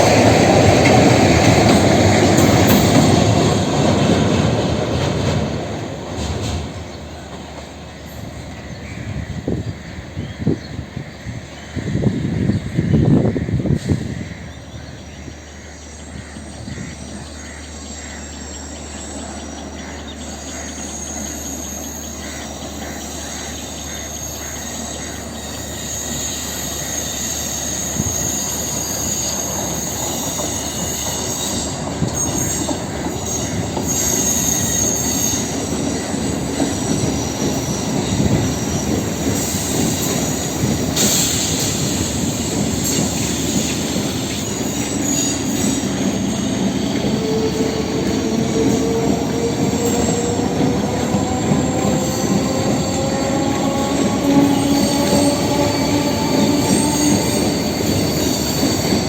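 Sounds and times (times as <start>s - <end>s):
train running on track: 0.0s - 59.0s
wheels squealing on rails: 0.0s - 59.0s.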